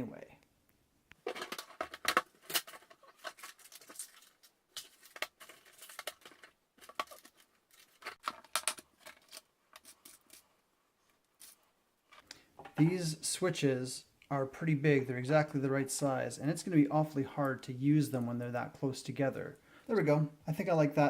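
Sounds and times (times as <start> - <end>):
paper rustling: 1.2 - 10.6.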